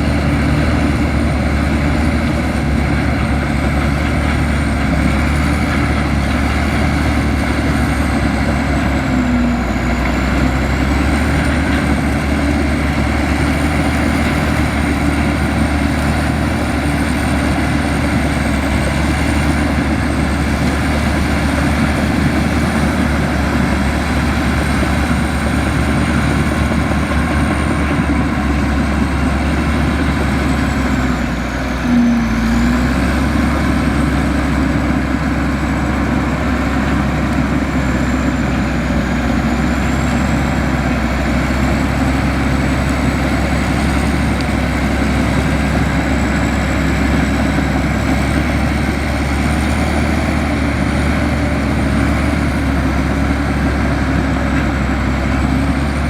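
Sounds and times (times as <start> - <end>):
bulldozer diesel engine rumbling: 0.0 - 56.0.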